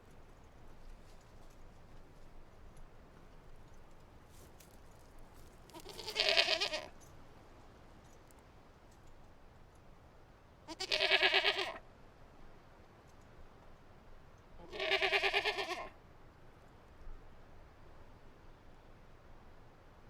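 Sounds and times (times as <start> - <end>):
goat bleating: 5.7 - 6.9, 10.7 - 11.8, 14.6 - 15.9.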